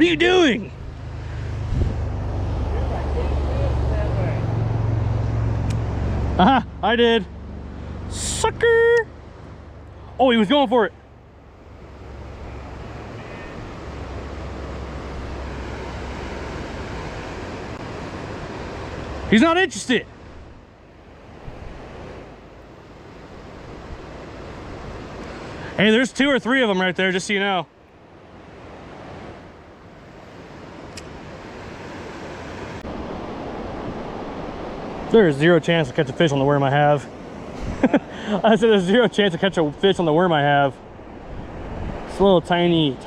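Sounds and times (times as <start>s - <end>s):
river water rushing: 0.0s - 43.0s
wind rumbling on microphone: 0.7s - 6.4s, 20.2s - 25.6s, 37.1s - 38.1s, 40.8s - 42.3s.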